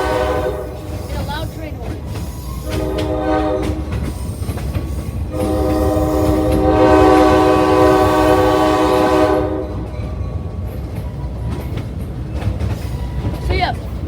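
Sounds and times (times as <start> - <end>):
locomotive horn blast: 0.0 - 1.4, 2.6 - 4.1, 5.3 - 10.0
train rumbling on track: 0.0 - 14.0.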